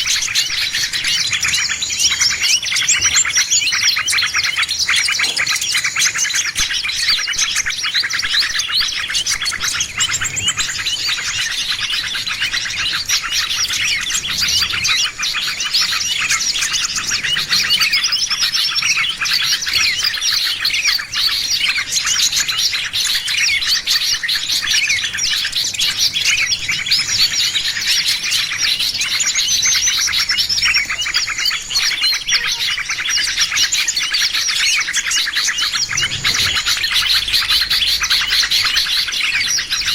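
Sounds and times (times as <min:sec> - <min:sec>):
songbirds chirping and trilling: 0:00.0 - 0:39.9.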